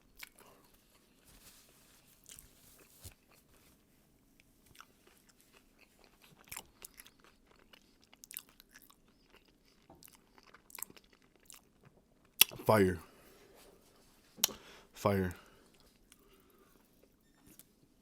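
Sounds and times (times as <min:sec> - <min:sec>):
chewing crunchy food: 0:00.0 - 0:01.3, 0:02.0 - 0:12.6.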